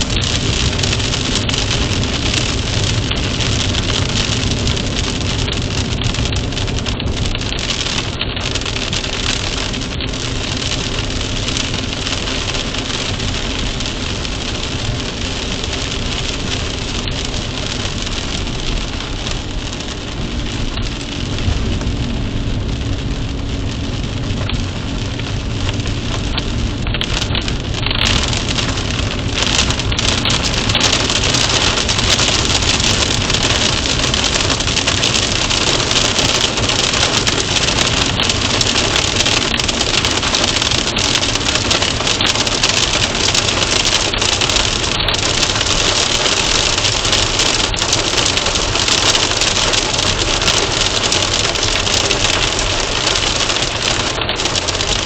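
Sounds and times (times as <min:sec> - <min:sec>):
steady rain falling: 0:00.0 - 0:55.0.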